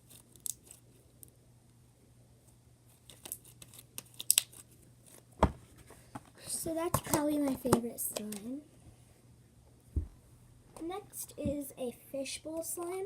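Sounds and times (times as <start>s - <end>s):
dull thump: 5.4s - 5.6s, 9.9s - 10.2s.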